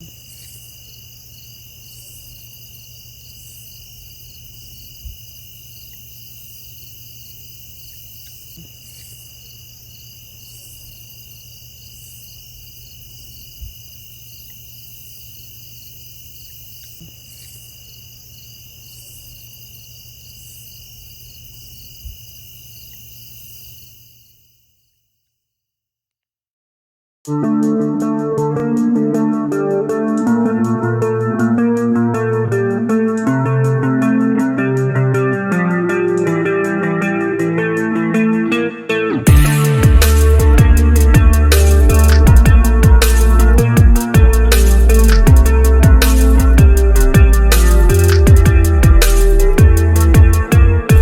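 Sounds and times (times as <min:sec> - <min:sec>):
crickets trilling: 0:00.0 - 0:25.3, 0:27.6 - 0:51.0
higher pulsing insect call: 0:00.0 - 0:25.4, 0:27.6 - 0:51.0
soft low thumps: 0:39.3 - 0:51.0.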